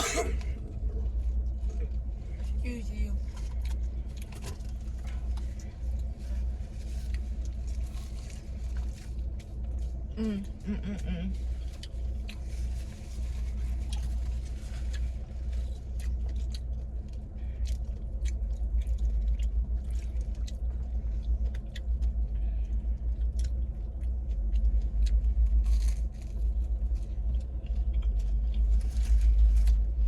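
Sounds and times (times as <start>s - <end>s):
car engine rumble from inside: 0.0s - 30.0s
person chewing: 11.5s - 30.0s.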